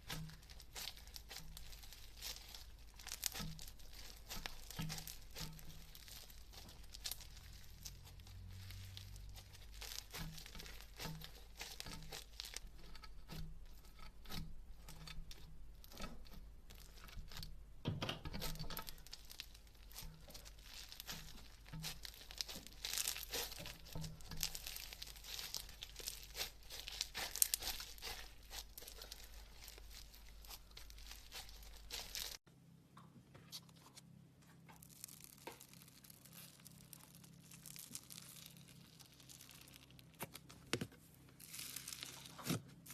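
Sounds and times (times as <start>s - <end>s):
slime squeezed wet crackling: 0.0s - 12.6s, 18.9s - 32.4s, 34.8s - 40.5s, 41.4s - 42.9s.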